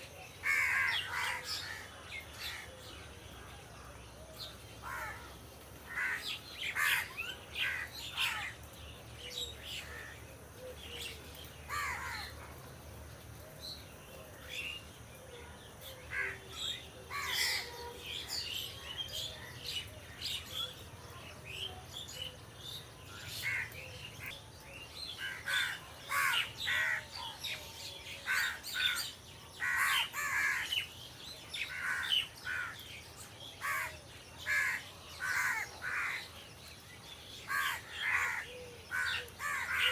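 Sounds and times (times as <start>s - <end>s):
crows cawing: 0.4s - 1.8s, 5.9s - 8.5s, 11.7s - 12.3s, 25.3s - 27.1s, 29.6s - 30.8s, 33.6s - 33.9s, 37.5s - 39.9s.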